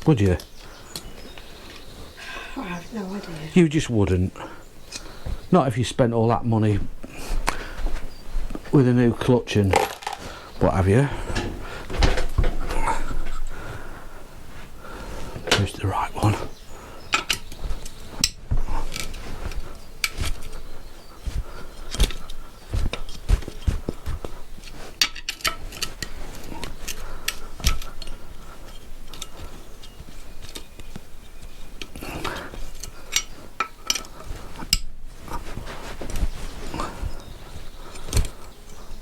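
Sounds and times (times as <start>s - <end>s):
tools and metal parts clinking: 9.7s - 10.3s, 17.1s - 19.2s, 25.0s - 34.9s.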